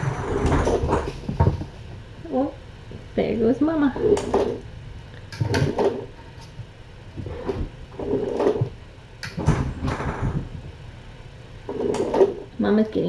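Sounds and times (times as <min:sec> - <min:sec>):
objects knocking and clattering: 0:00.0 - 0:03.1, 0:05.3 - 0:10.9.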